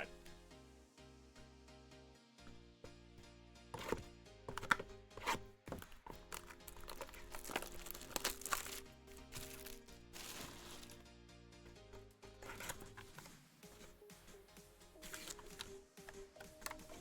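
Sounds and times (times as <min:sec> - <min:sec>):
background music: 0:00.0 - 0:17.0
cards clicking and shuffling: 0:03.8 - 0:11.0, 0:12.4 - 0:13.9, 0:15.0 - 0:17.0
card pack wrappers crinkling: 0:05.7 - 0:11.0, 0:12.4 - 0:13.3, 0:15.0 - 0:15.8.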